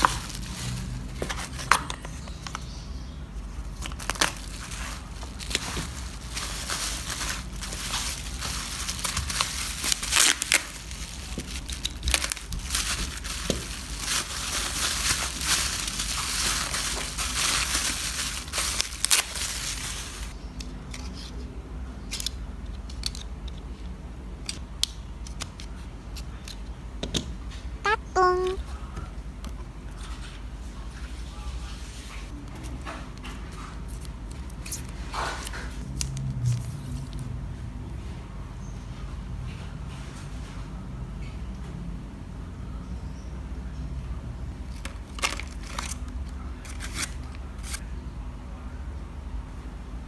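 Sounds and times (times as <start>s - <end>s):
crinkling and crunching: 0.0s - 2.7s, 3.4s - 20.4s, 44.6s - 47.8s.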